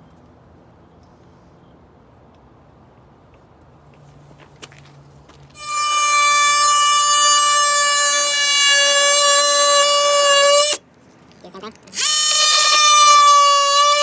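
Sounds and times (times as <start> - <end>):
electric horn steady note: 5.6 - 10.8, 12.0 - 14.0.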